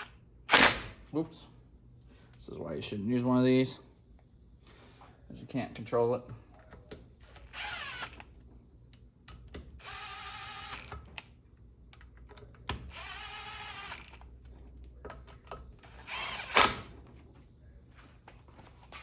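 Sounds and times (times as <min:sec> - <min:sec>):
power drill spinning: 0:00.0 - 0:00.8, 0:07.2 - 0:08.2, 0:09.8 - 0:11.2, 0:12.9 - 0:14.3, 0:15.8 - 0:16.9.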